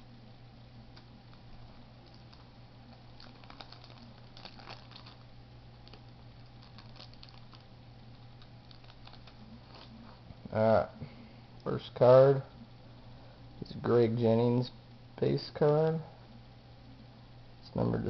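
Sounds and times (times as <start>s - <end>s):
low electrical hum: 0.0s - 18.0s
card packaging rustling: 1.3s - 10.2s.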